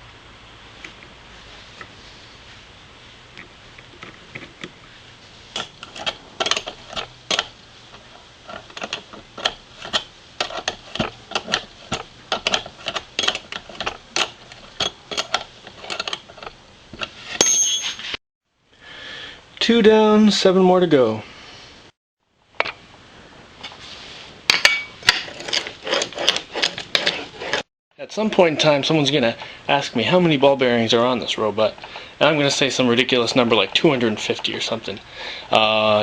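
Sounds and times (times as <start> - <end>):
metal part ringing: 17.3 - 18.2.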